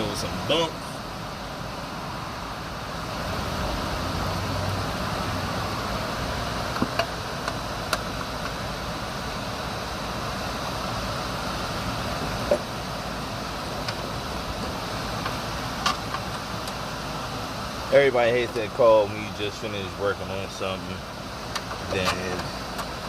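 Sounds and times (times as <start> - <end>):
truck road and engine noise: 0.0 - 23.0.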